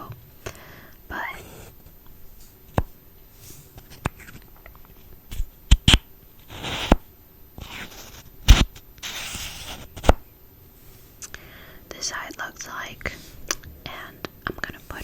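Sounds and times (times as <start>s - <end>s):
soft rustling scrapes: 1.2s - 2.6s, 3.3s - 4.4s, 10.7s - 11.2s.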